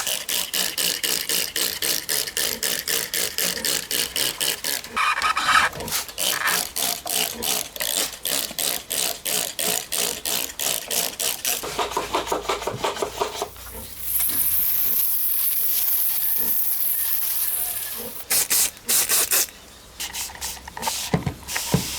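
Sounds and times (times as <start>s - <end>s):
spray hiss: 13.6s - 19.5s.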